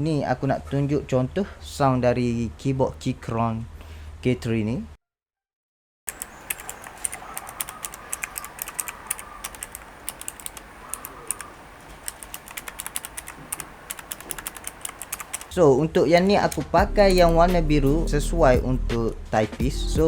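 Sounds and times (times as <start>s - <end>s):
mechanical keyboard key clicks: 6.1s - 15.5s, 16.2s - 17.4s.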